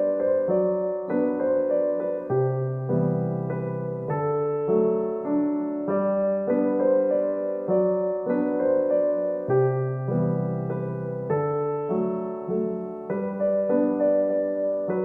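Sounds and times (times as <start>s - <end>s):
soft electric piano melody: 0.0s - 15.0s.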